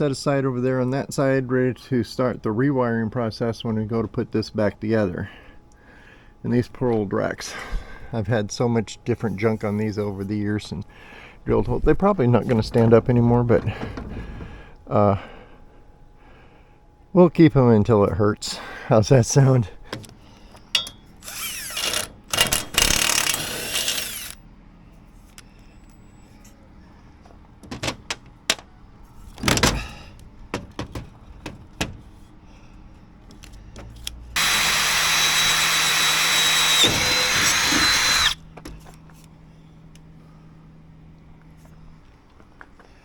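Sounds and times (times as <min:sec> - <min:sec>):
tools and metal clanking: 0:12.3 - 0:14.8, 0:19.8 - 0:24.4, 0:27.2 - 0:32.4
power drill boring through metal: 0:21.2 - 0:24.4, 0:34.4 - 0:38.4.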